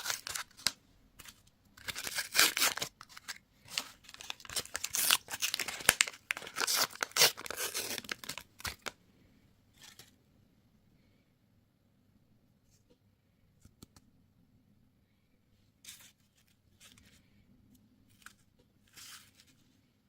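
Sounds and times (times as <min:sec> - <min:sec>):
candy wrapper crinkling: 0:00.0 - 0:09.0.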